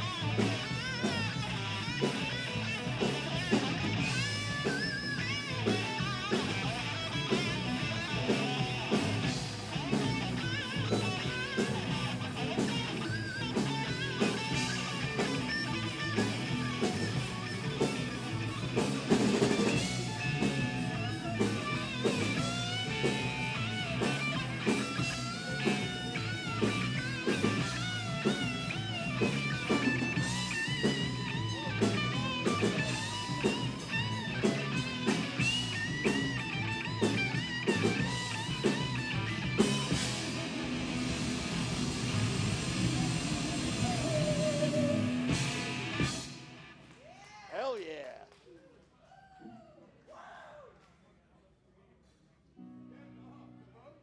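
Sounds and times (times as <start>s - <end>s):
drum kit beat: 0.0s - 46.8s
electric guitar lead: 0.0s - 46.8s.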